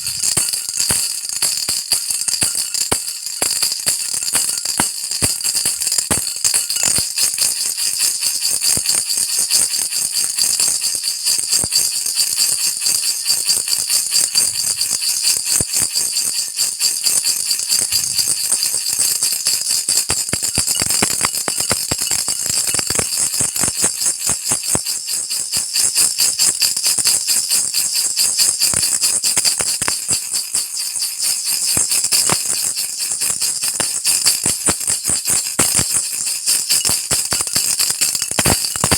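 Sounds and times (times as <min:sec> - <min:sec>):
baby rattle shaken rapidly: 0:00.0 - 0:38.9.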